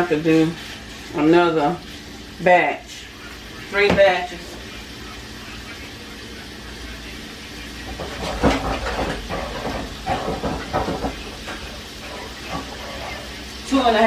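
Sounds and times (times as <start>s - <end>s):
chicken sizzling in oil: 0.0s - 14.0s
clatters in a pan: 7.9s - 13.4s.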